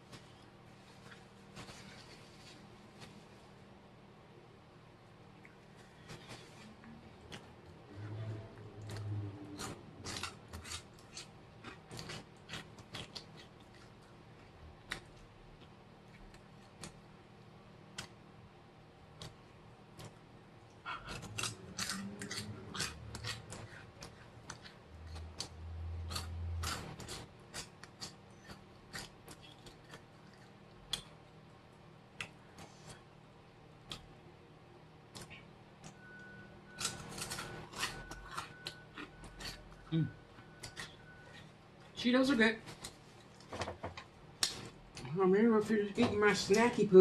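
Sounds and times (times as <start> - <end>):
low hum: 0.0 - 12.1
crunchy snack chewing: 8.7 - 17.0, 20.9 - 31.4, 36.7 - 41.5.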